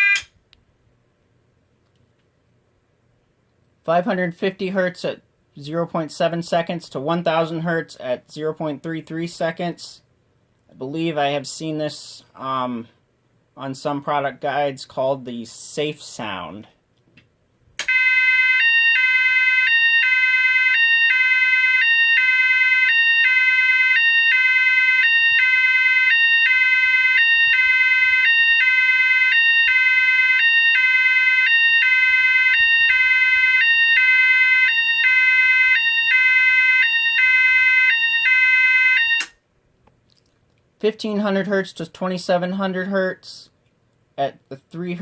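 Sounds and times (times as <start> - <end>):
two-tone electronic alarm: 0.0 - 0.3, 17.9 - 39.3.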